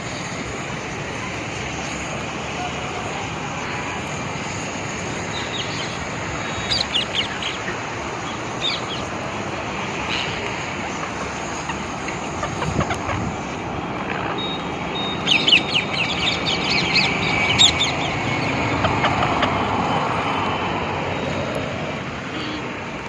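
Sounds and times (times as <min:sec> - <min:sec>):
parrot chirping: 0:05.3 - 0:09.1, 0:15.0 - 0:18.6.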